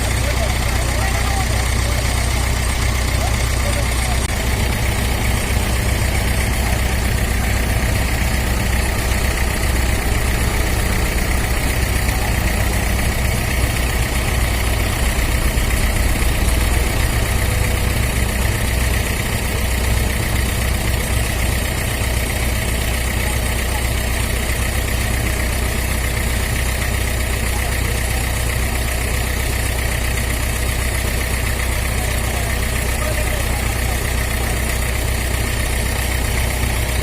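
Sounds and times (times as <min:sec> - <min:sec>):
diesel engine idling: 0:00.0 - 0:37.0.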